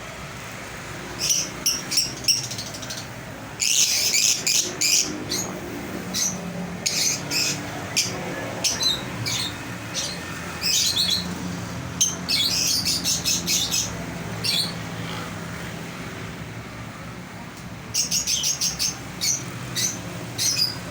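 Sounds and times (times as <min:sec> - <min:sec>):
lovebirds chirping: 0:01.1 - 0:11.4, 0:12.0 - 0:14.9, 0:17.9 - 0:20.9.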